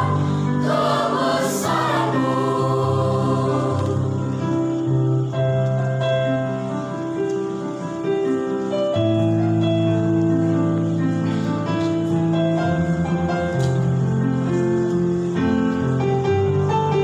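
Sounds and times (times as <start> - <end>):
church choir singing a hymn: 0.0 - 5.0
piano accompaniment: 0.0 - 17.0.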